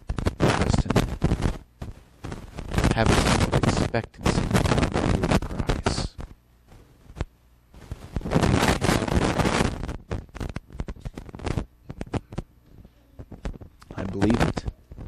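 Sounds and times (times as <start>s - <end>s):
microphone crackling and popping: 0.0s - 15.0s.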